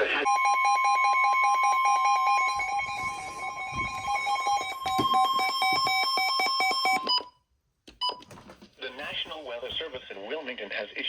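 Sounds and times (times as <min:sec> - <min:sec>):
steady high electronic tone: 0:00.2 - 0:05.8.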